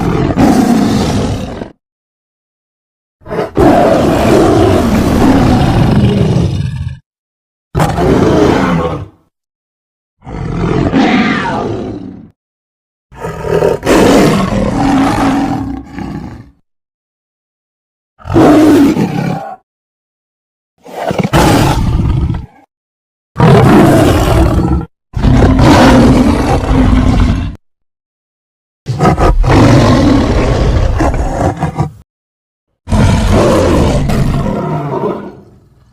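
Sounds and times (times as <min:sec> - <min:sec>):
beast roaring and growling: 0:00.0 - 0:01.8, 0:03.2 - 0:07.0, 0:07.8 - 0:09.2, 0:10.2 - 0:12.4, 0:13.2 - 0:16.6, 0:18.2 - 0:19.6, 0:20.8 - 0:22.7, 0:23.4 - 0:27.6, 0:28.9 - 0:32.0, 0:32.9 - 0:35.6.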